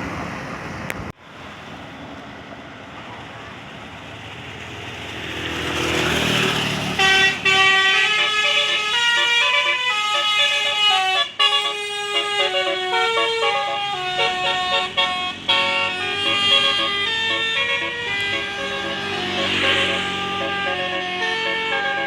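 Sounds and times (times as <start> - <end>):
musical bus air horns: 6.9 - 22.0.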